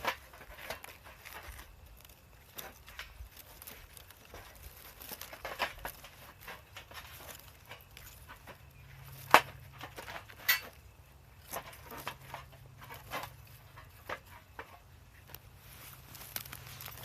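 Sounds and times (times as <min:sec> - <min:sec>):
wood fire crackling: 0:00.0 - 0:17.0
fire pops and snaps: 0:11.4 - 0:17.0.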